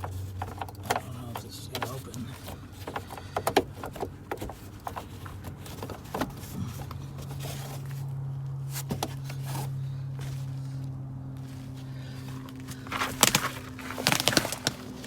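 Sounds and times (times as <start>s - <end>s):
clicks and knocks of compartment: 0.0s - 10.4s, 12.4s - 15.0s
steady low hum: 0.0s - 15.0s.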